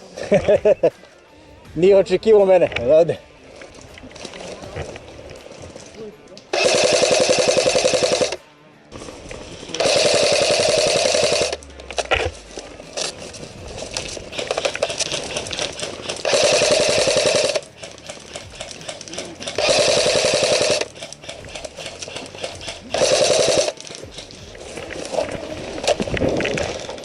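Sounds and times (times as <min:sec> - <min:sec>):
airsoft gun firing bursts: 0:06.5 - 0:08.4, 0:09.0 - 0:11.6, 0:12.2 - 0:27.0.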